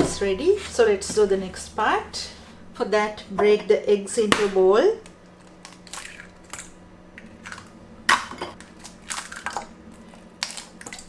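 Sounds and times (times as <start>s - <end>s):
eggs cracking against a bowl: 4.3s - 11.0s.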